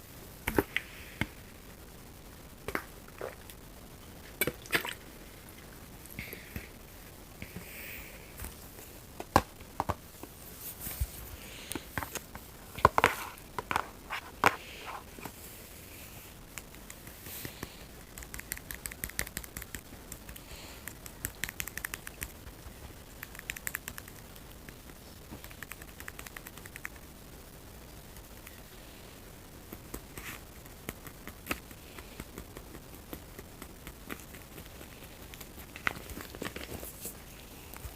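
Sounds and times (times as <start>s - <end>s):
sharp clicks and taps: 16.5s - 22.4s.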